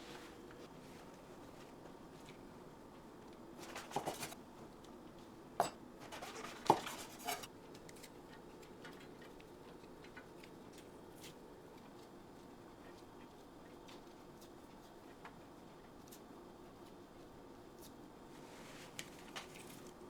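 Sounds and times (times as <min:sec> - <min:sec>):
utensils clinking against dishes: 0:05.6 - 0:05.8.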